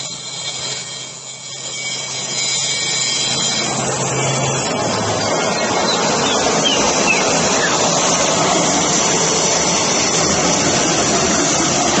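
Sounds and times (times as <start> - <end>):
cutting saw running: 0.0 - 12.0
falling whistles: 0.2 - 3.5, 4.2 - 8.2.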